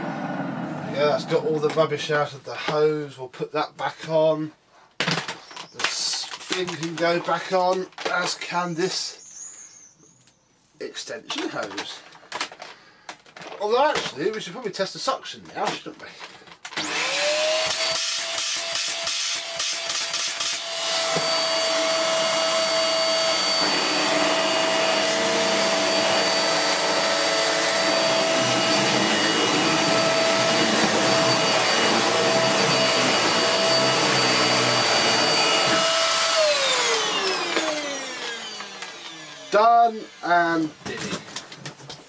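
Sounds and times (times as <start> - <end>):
motor whine spinning down: 0.0 - 1.4, 21.1 - 40.2
vacuum cleaner running: 0.0 - 1.8, 16.7 - 41.4.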